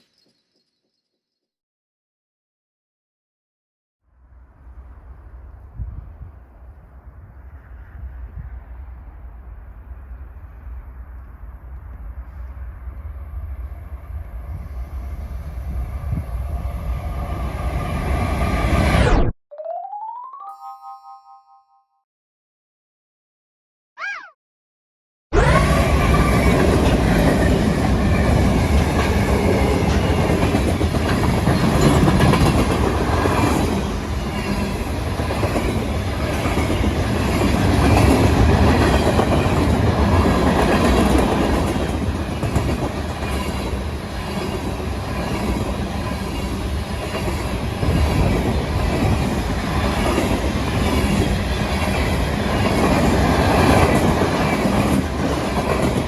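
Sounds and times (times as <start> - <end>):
freight train clattering past: 25.6 - 56.0.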